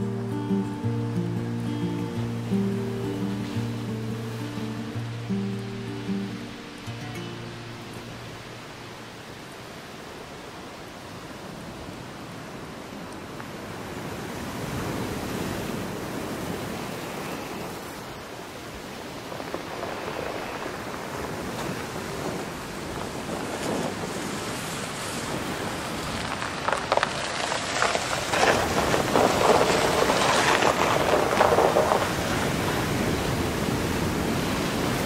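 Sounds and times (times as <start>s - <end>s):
dense crackling rustle: 0.0s - 9.2s, 19.1s - 34.1s
wind rushing over microphone: 14.0s - 26.6s, 28.0s - 35.0s.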